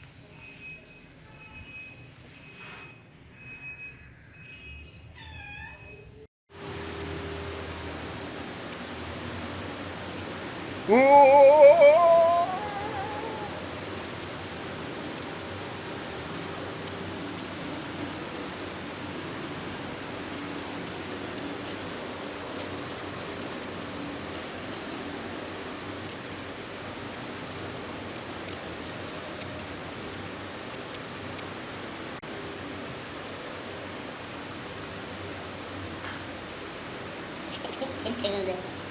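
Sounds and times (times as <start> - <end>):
high wavering whistle tone: 6.6 - 16.0, 16.8 - 21.9, 22.5 - 25.2, 26.0 - 32.6.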